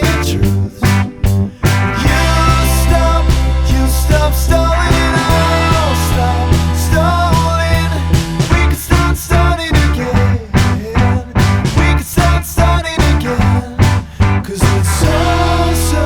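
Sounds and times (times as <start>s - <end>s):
rock guitar: 0.0s - 16.0s
drum beat: 2.0s - 9.9s.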